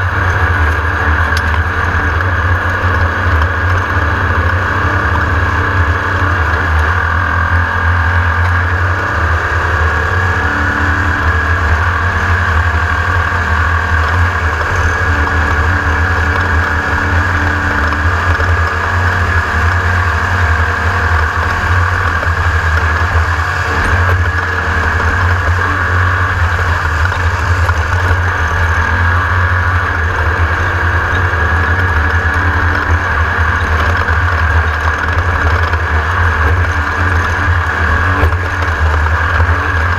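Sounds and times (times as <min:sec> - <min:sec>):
race buggy engine running hard: 0:00.0 - 0:39.9.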